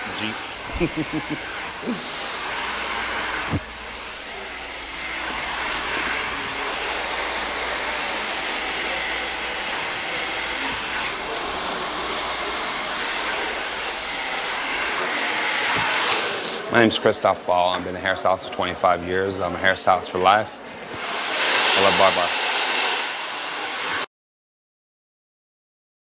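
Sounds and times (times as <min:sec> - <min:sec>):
blow dryer running: 0:00.0 - 0:16.8, 0:20.9 - 0:24.1.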